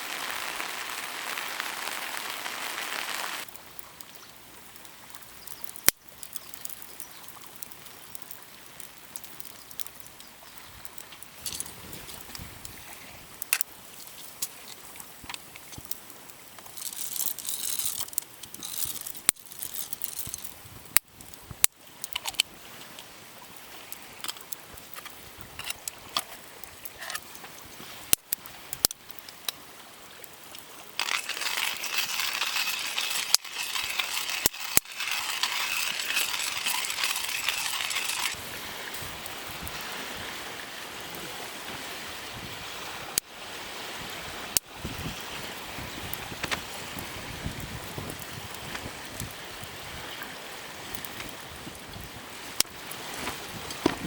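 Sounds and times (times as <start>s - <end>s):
steady hiss: 0.0s - 6.9s, 26.1s - 48.8s
small metal objects clinking: 16.7s - 20.5s, 31.0s - 38.4s.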